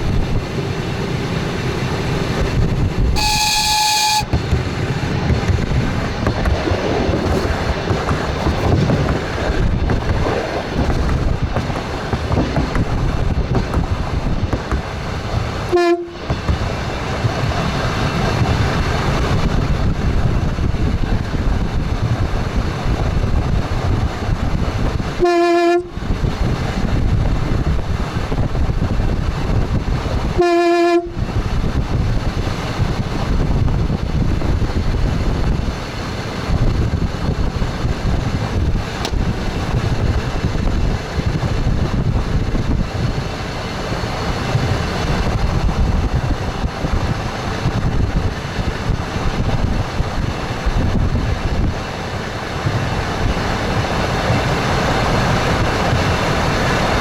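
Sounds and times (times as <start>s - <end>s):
train wheels rumbling on rails: 0.0s - 57.0s
train horn blasts: 3.1s - 4.5s, 15.7s - 16.3s, 25.2s - 26.0s, 30.3s - 31.3s.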